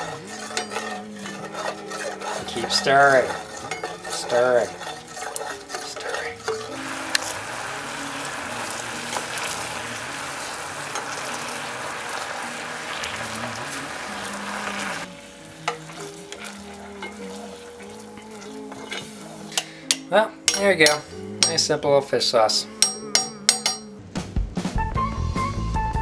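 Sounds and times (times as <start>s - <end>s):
sauce sizzling in a pot: 0.0s - 20.0s.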